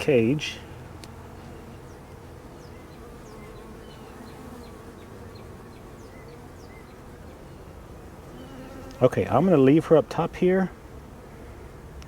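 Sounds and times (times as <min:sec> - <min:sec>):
bees humming: 0:00.0 - 0:12.0.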